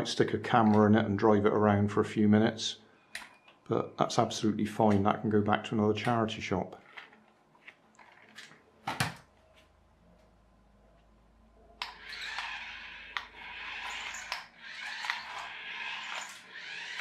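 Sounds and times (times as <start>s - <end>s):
sharp clicks: 11.8s - 13.3s
toy train motor whirring: 11.8s - 17.0s.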